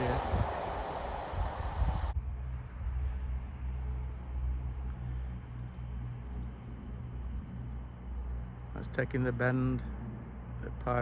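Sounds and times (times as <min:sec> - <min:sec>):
train passing slowly: 0:00.0 - 0:02.2.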